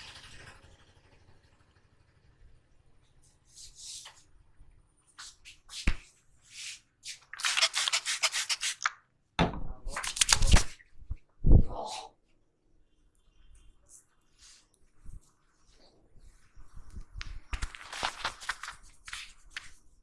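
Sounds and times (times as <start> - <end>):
hands rubbing hair and scalp: 6.6 - 8.9.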